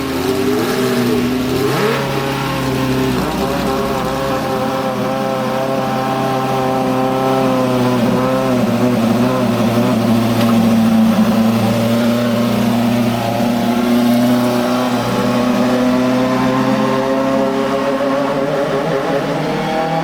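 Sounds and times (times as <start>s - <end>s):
racing car engine running: 0.0s - 20.0s.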